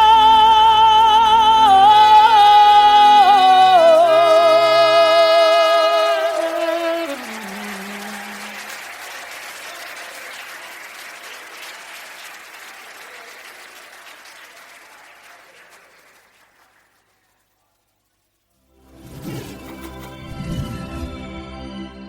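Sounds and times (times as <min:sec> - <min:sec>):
audience applauding: 0:01.6 - 0:17.7.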